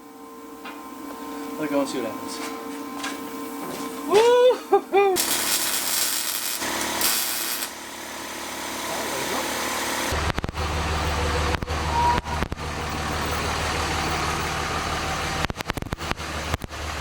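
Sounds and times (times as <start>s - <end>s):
hiss: 5.2s - 7.8s
engine idling: 5.5s - 17.0s.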